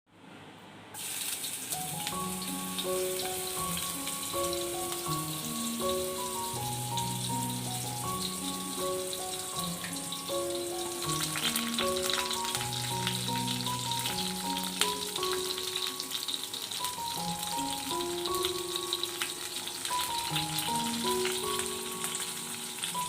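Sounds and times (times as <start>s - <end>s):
food sizzling in hot oil: 1.0s - 23.0s
background music melody: 1.6s - 23.0s.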